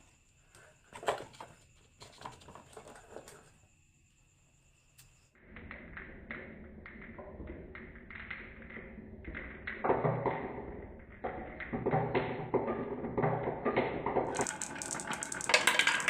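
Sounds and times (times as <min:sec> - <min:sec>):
marbles clattering down a run: 0:05.4 - 0:16.0.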